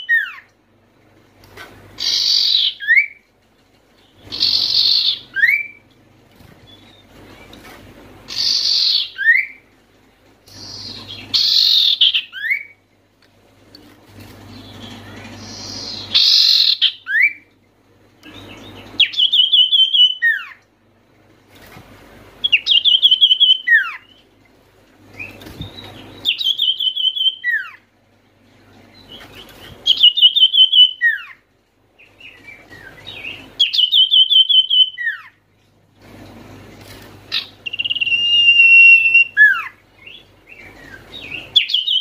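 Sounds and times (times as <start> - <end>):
bird singing trills and whistles: 0.0 - 0.5, 2.0 - 3.2, 4.2 - 5.9, 8.3 - 9.6, 10.5 - 12.8, 14.5 - 17.5, 18.2 - 20.6, 22.4 - 24.3, 25.2 - 27.8, 28.9 - 31.4, 32.0 - 35.4, 37.3 - 42.0.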